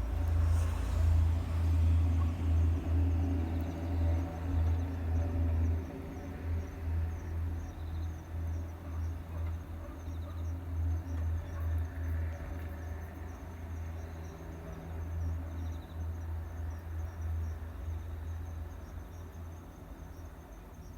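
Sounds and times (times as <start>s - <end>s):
low pulsing rumble: 0.0s - 8.7s
insect chirps and trills: 2.6s - 20.9s.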